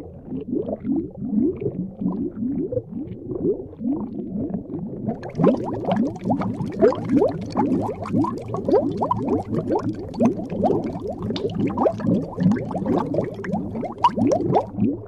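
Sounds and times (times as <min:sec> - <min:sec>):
water bubbling and gurgling: 0:00.0 - 0:15.0.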